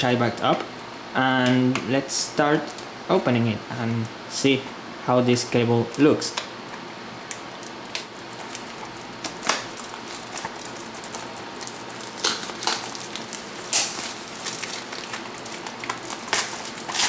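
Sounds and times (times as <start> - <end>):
packaging rustling: 7.3 - 17.0.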